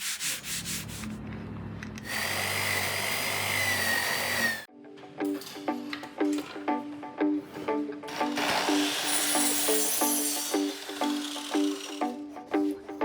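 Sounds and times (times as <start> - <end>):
power tool humming: 2.0 - 4.7, 8.1 - 12.2
music with plucked notes: 4.7 - 8.5.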